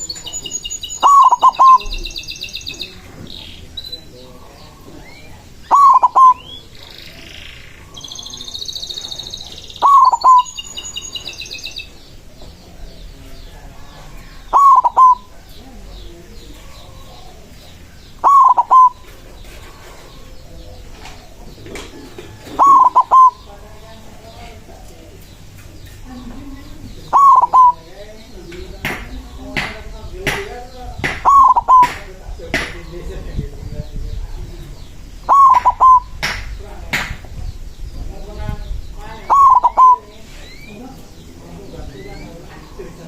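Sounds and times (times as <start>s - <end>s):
dove cooing: 0.0s - 3.2s, 4.0s - 12.0s, 14.2s - 23.9s, 26.0s - 28.0s, 31.2s - 32.0s, 35.2s - 36.3s, 39.1s - 40.3s
small birds chirping faintly: 0.0s - 43.0s.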